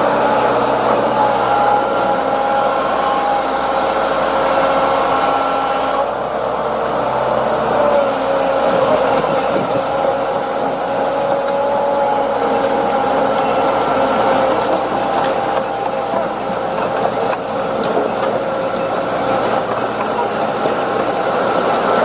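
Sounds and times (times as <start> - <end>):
heavy diesel machinery running: 0.0 - 22.0.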